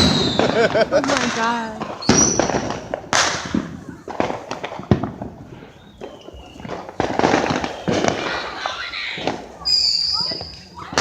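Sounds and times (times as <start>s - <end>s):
firework whistle: 0.0s - 0.7s, 2.0s - 3.6s, 5.5s - 11.0s
firecracker bangs: 0.0s - 11.0s
fireworks crackling: 0.0s - 11.0s.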